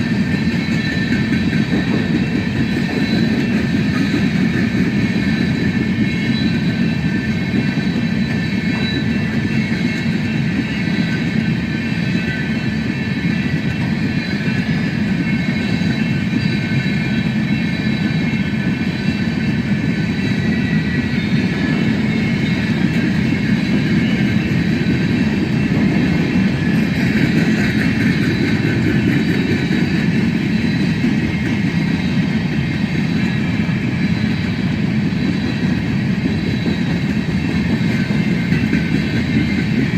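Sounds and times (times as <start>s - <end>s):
train wheels rumbling on rails: 0.0s - 39.9s.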